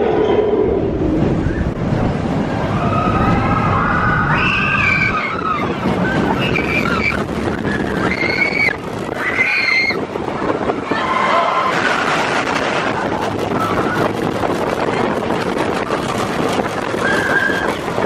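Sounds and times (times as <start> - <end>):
roller coaster rumbling on track: 0.0 - 18.0
wind on microphone: 0.0 - 18.0
riders screaming: 2.7 - 10.0.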